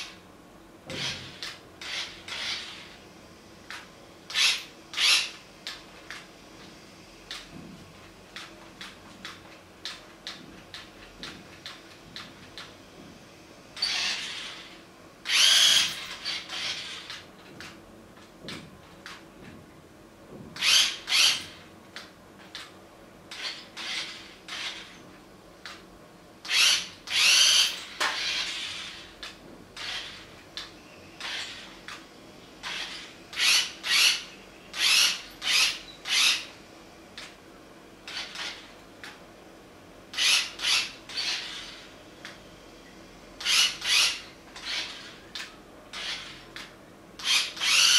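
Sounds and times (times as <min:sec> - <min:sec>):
toy electric motor whirring: 0:00.9 - 0:03.0, 0:04.3 - 0:05.4, 0:13.8 - 0:17.2, 0:20.6 - 0:21.6, 0:23.3 - 0:25.0, 0:26.4 - 0:30.3, 0:31.2 - 0:31.8, 0:32.6 - 0:36.5, 0:38.1 - 0:38.7, 0:40.1 - 0:41.9, 0:43.4 - 0:46.4, 0:47.2 - 0:47.9.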